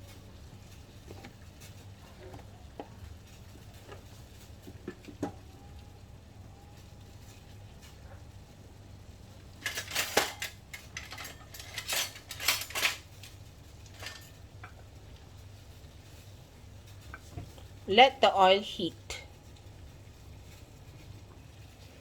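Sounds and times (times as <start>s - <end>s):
utensils clinking against pan: 9.6s - 14.4s.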